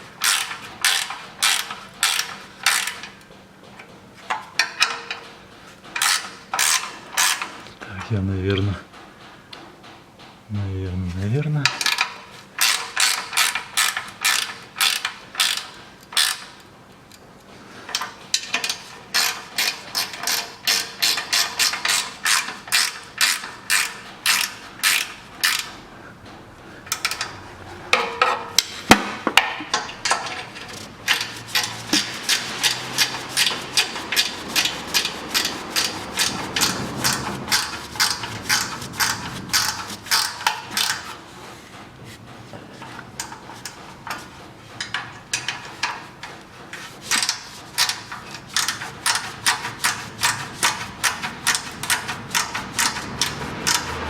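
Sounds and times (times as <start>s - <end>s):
ratchet wrench clicking: 0.2s - 3.0s, 6.0s - 7.5s, 11.9s - 16.6s, 18.6s - 25.7s, 31.1s - 41.0s, 47.1s - 54.0s.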